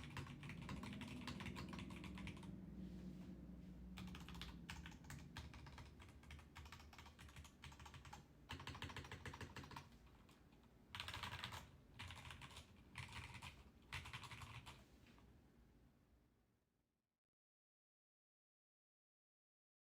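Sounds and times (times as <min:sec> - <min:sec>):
fast mechanical keyboard typing: 0:00.0 - 0:02.5, 0:04.0 - 0:14.8.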